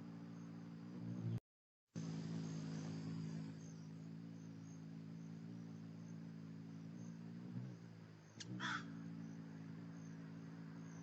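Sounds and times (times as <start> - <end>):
faint high insect chirping: 0.0 - 1.4, 2.0 - 11.0
steady low hum: 0.0 - 1.4, 2.0 - 11.0.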